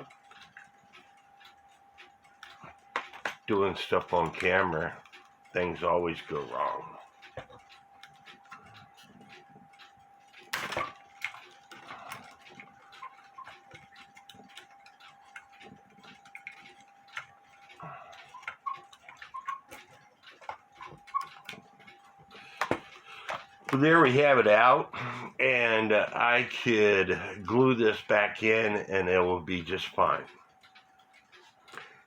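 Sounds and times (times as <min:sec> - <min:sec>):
light wooden clicks and knocks: 0:07.2 - 0:23.9.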